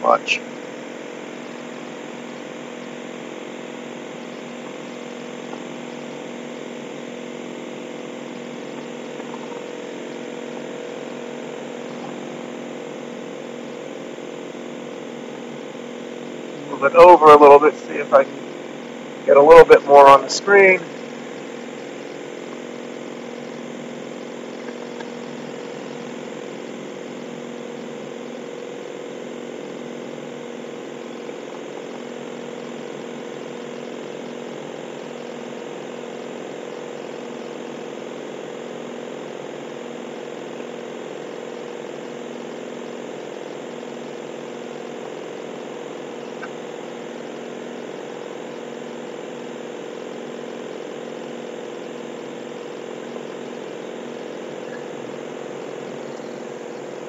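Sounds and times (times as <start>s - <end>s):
car engine idling roughly: 19.8s - 28.9s.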